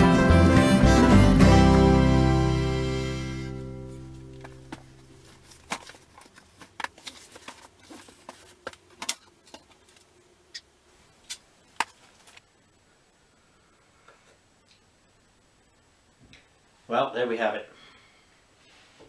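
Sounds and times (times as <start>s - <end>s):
background music: 0.0s - 4.7s.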